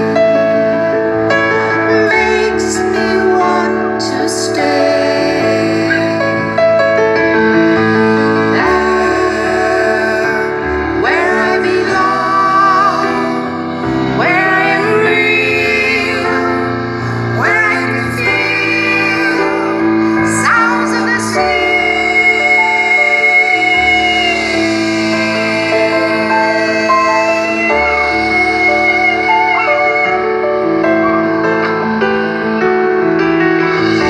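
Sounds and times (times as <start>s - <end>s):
woman singing: 1.9s - 6.6s, 8.2s - 30.5s
rock band playing: 5.1s - 34.0s.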